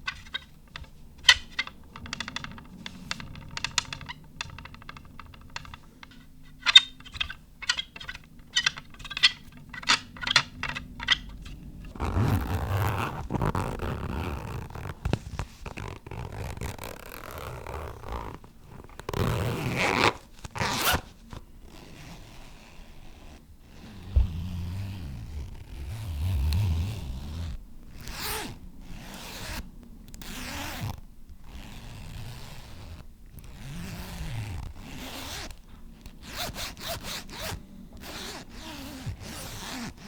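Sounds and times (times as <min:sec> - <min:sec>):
scraping and rasping: 0:00.0 - 0:21.1
zipper-like pull: 0:11.9 - 0:21.1, 0:36.2 - 0:40.0.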